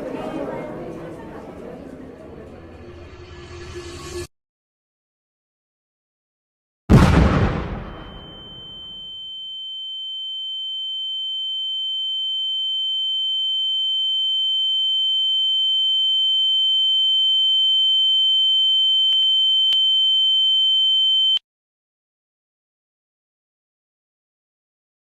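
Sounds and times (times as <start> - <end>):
high-pitched electronic tone: 8.0 - 14.9.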